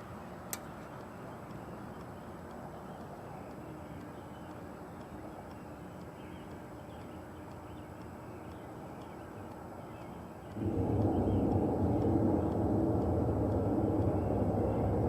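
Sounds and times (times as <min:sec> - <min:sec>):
faint steady hum: 0:00.0 - 0:15.0
steady low rumble: 0:10.5 - 0:15.0.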